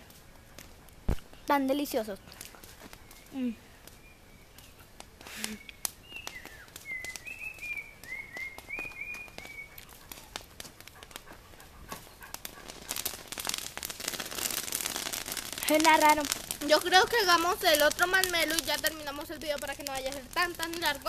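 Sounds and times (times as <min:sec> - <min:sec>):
bird chirping: 0:02.2 - 0:10.2.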